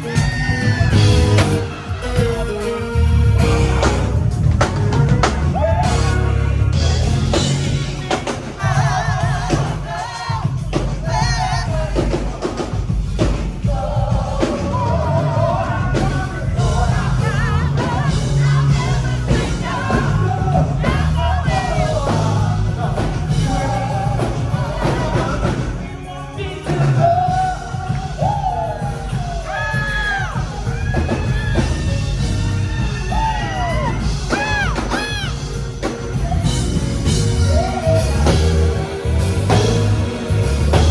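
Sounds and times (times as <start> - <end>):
rock band playing: 0.0 - 14.7, 15.6 - 40.9
drum kit: 0.0 - 40.9
person singing with vibrato: 13.6 - 35.7.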